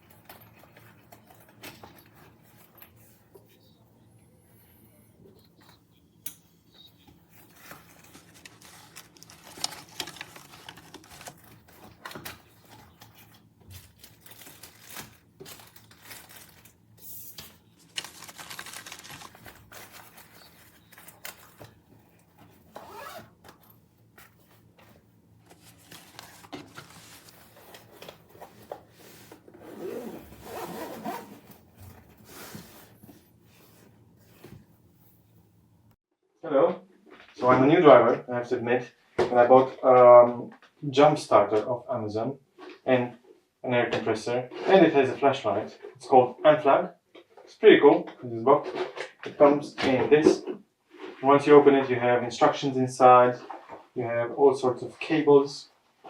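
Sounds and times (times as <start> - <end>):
objects being handled: 5.3 - 35.4.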